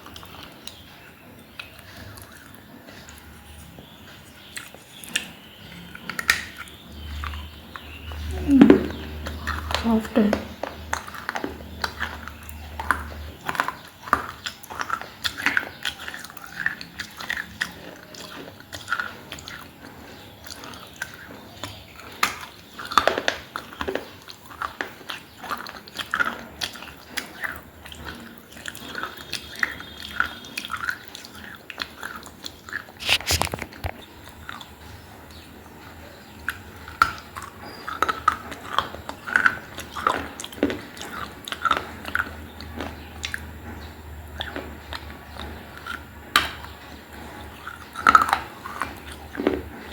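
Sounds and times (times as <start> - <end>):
crunchy chewing: 0.0 - 49.9.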